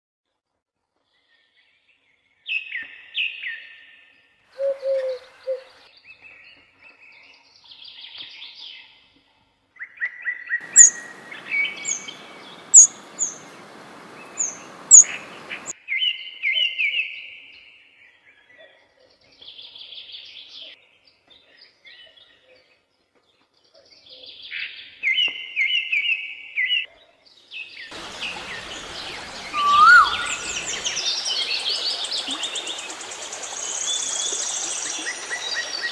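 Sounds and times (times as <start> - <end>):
background hiss: 10.6 - 15.7, 28.0 - 35.9
birds chirping and trilling: 10.6 - 15.7, 28.0 - 35.9.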